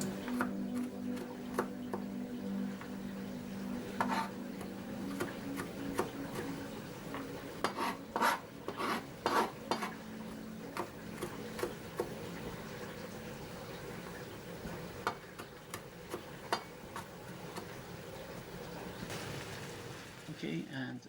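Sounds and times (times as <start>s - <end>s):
knife slicing food: 4.0s - 6.6s, 7.2s - 10.0s.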